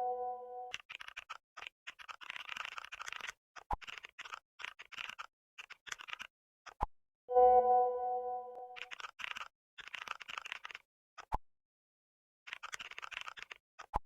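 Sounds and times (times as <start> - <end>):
keyboard typing: 5.9 - 6.3, 7.4 - 10.8.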